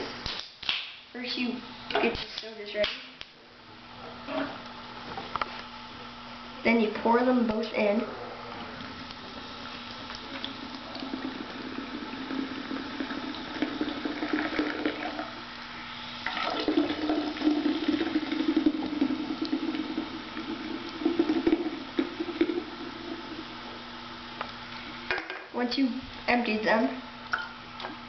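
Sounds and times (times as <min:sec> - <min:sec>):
soda pouring into container: 0:08.8 - 0:25.0.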